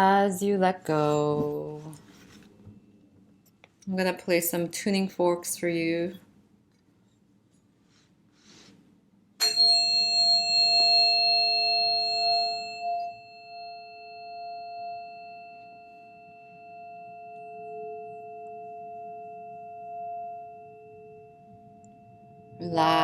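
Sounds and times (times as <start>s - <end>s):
tuning forks ringing: 9.4s - 23.0s.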